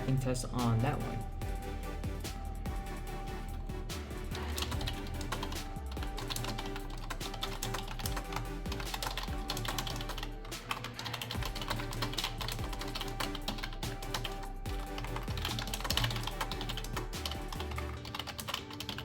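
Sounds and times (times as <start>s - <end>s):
background music: 0.0s - 19.0s
rapid typing on keyboard: 3.9s - 19.0s.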